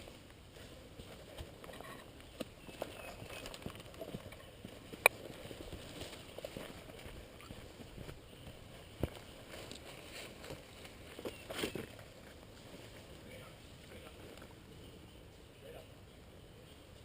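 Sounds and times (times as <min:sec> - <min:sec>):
footsteps crunching on forest floor: 0:00.0 - 0:13.2.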